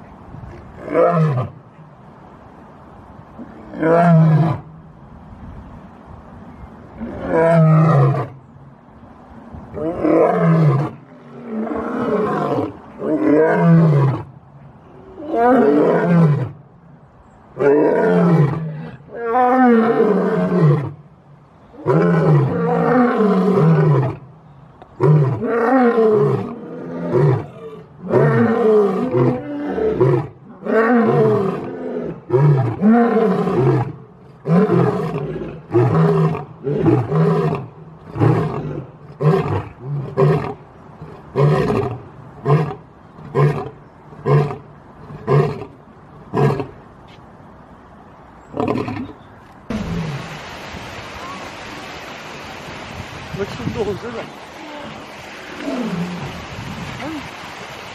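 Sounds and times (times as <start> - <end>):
lion roaring: 54.6 - 56.3.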